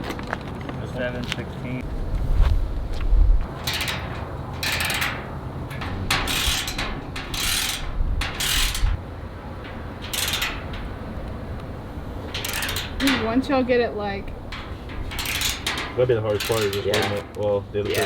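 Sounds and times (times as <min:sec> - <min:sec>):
socket ratchet clicking: 0:03.5 - 0:09.0, 0:09.7 - 0:11.4, 0:12.3 - 0:13.3, 0:14.4 - 0:17.2.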